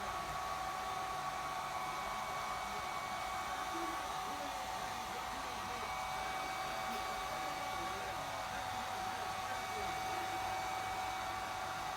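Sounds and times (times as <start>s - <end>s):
hair dryer running: 0.0s - 3.8s.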